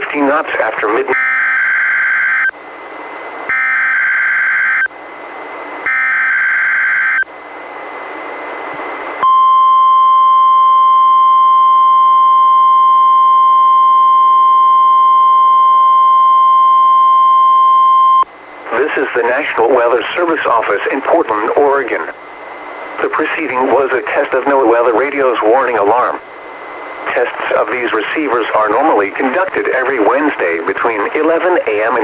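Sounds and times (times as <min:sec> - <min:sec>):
steady warning alarm tone: 0:01.1 - 0:05.0, 0:05.8 - 0:07.3, 0:09.2 - 0:18.3.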